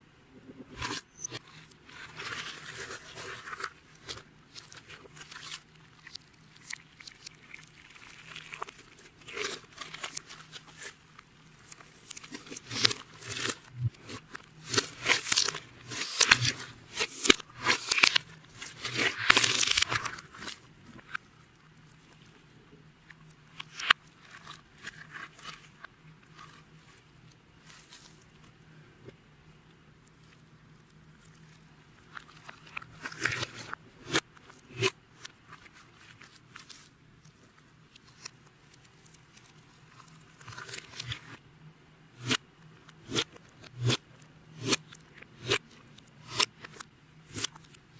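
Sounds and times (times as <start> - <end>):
slime crackling and squishing: 0.8 - 21.2.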